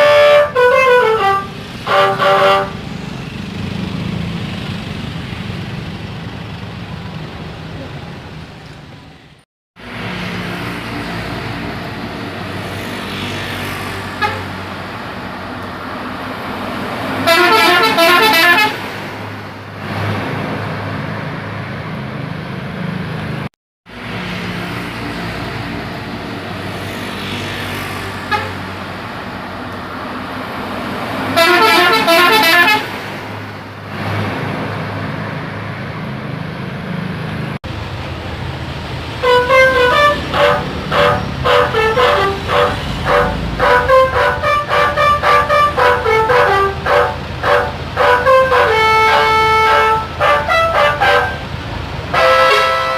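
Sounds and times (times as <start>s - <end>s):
multi-tone musical bus horn: 0.0s - 3.0s, 14.0s - 14.6s, 17.2s - 18.9s, 28.3s - 28.7s, 31.3s - 33.0s, 39.2s - 51.5s, 52.1s - 52.9s
vehicle engine and traffic: 0.0s - 52.9s.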